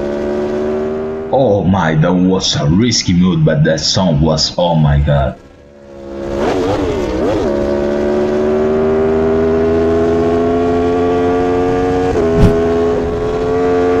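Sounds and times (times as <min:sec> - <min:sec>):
motorcycle engine revving: 0:00.0 - 0:01.3, 0:05.8 - 0:14.0.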